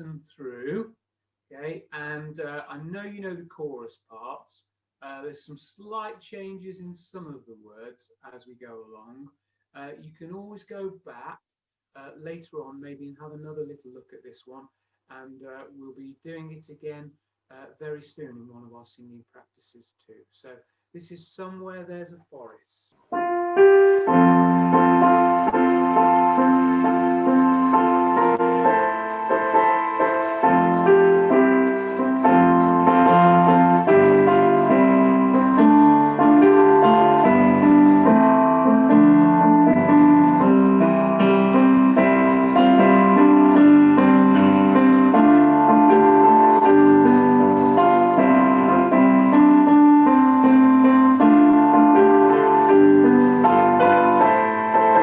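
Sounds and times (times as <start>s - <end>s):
piano playing chords: 23.1s - 55.0s.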